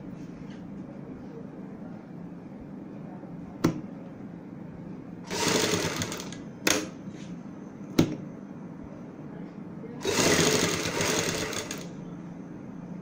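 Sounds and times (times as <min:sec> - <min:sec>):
sewing machine stitching: 0:05.3 - 0:06.8, 0:10.0 - 0:11.9.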